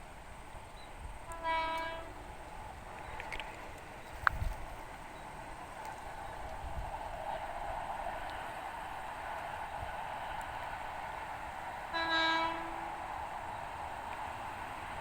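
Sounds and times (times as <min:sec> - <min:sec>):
steady background hiss: 0:00.0 - 0:15.0
electric train horn blast: 0:01.3 - 0:02.4, 0:11.9 - 0:13.0.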